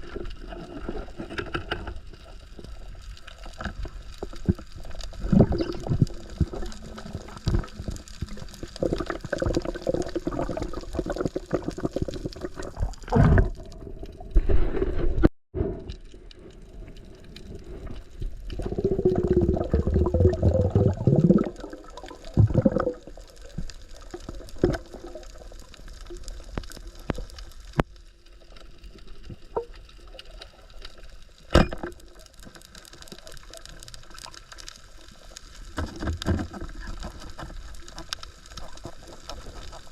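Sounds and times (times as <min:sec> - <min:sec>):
water sloshing and gurgling: 0:00.0 - 0:39.9.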